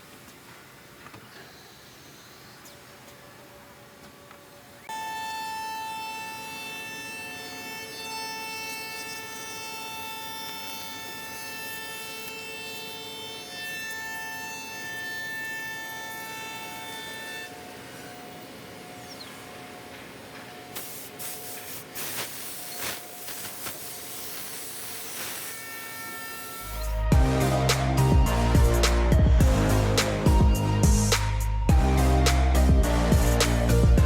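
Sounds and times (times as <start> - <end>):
router spindle whining: 4.9 - 19.2.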